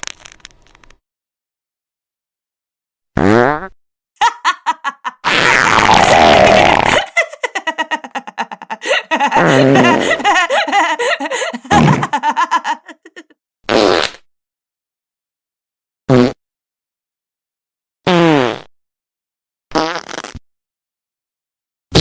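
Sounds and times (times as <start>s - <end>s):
wet fart sound effects: 5.2s - 6.9s, 19.8s - 20.4s.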